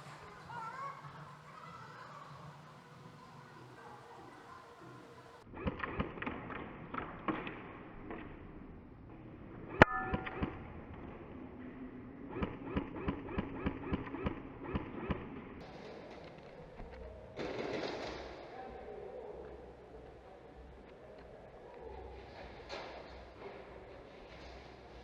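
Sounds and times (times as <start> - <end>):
airsoft gun shots: 5.5 - 7.8, 12.3 - 15.6, 17.4 - 18.4.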